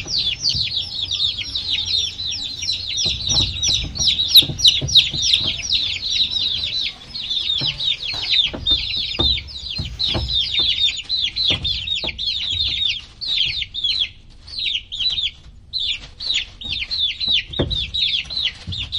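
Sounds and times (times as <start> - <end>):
dull knocks: 0.0 - 12.2
baby chicks peeping: 0.0 - 18.9.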